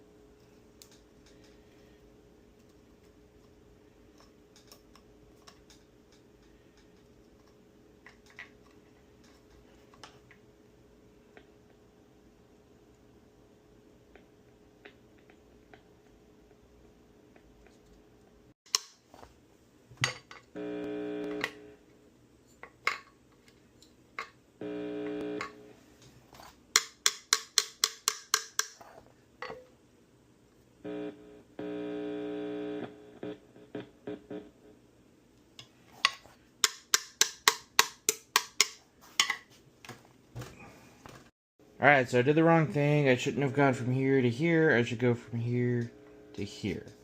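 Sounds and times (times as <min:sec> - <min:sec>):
guitar amplifier buzzing: 0:20.5 - 0:21.9, 0:24.6 - 0:25.8, 0:30.8 - 0:34.8, 0:44.8 - 0:47.0.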